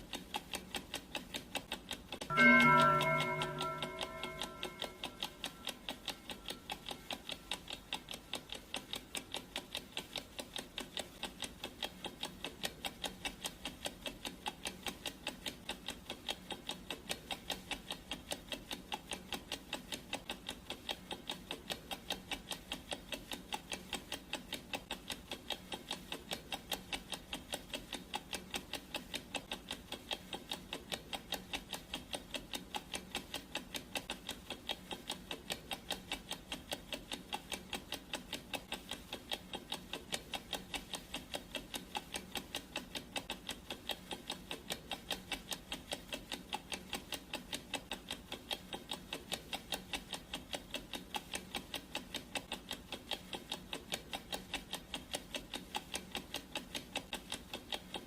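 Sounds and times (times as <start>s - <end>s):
clock ticking: 0.0s - 58.0s.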